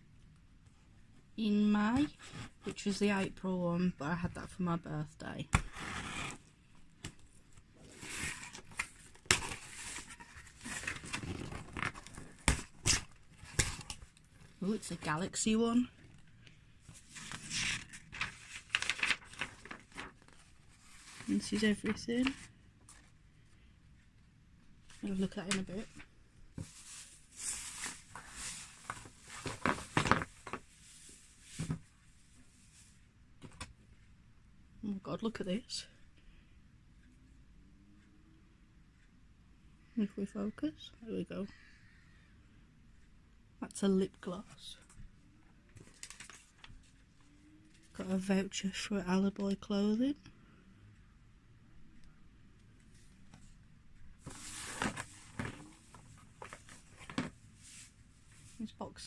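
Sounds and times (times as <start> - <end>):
packaging rustling and crinkling: 7.8 - 14.2, 16.9 - 22.5, 26.6 - 30.7, 45.8 - 46.7, 54.2 - 57.4
cardboard packaging tearing and rustling: 7.9 - 13.9, 17.1 - 20.3.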